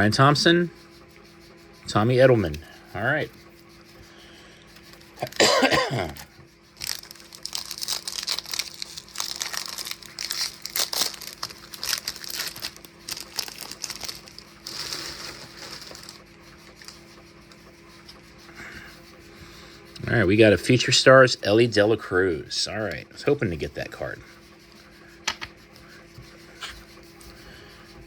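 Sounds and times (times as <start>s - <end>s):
foil wrapper tearing and crinkling: 6.8s - 16.2s.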